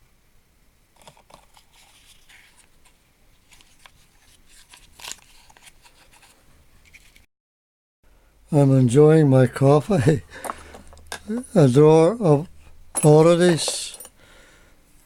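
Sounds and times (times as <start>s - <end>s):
rustling: 1.0s - 7.3s.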